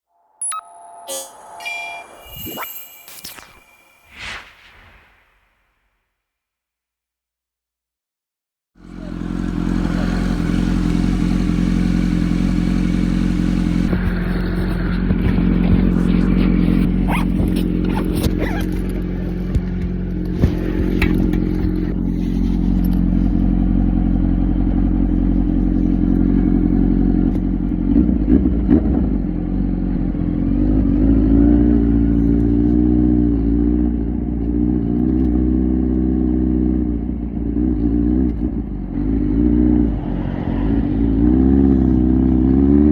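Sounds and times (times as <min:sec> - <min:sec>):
motorcycle engine idling: 0:08.8 - 0:28.3.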